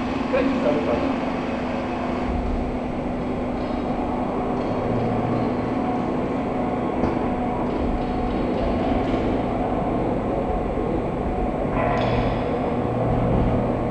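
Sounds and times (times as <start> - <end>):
machining center humming: 0.0 - 13.9.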